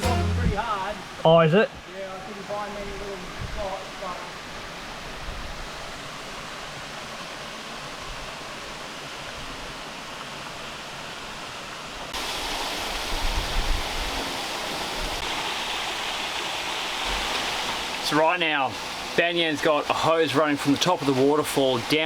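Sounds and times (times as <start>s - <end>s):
waterfall rushing: 0.0s - 5.2s, 12.1s - 22.0s.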